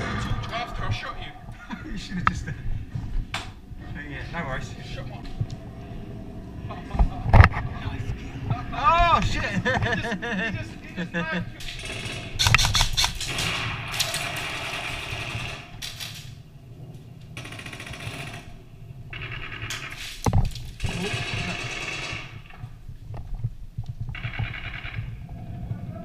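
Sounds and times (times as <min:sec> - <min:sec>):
airsoft guns full-auto bursts: 0:11.6 - 0:16.1, 0:17.4 - 0:20.1, 0:20.7 - 0:22.5.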